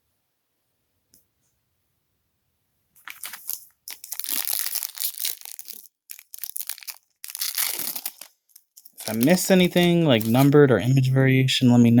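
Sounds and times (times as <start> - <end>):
foil wrapper crinkling and tearing: 3.0 - 10.6.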